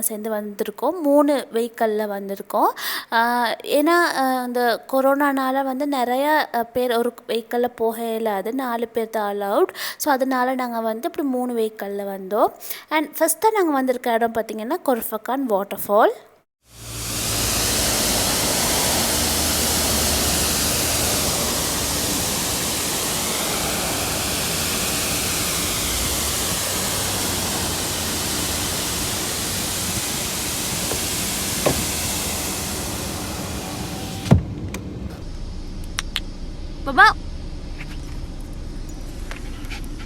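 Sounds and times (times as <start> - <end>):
waterfall rushing hiss: 16.7 - 34.7.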